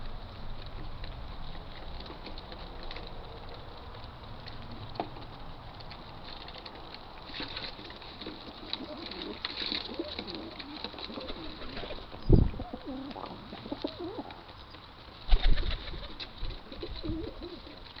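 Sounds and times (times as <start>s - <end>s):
pigeons cooing: 6.6s - 18.0s.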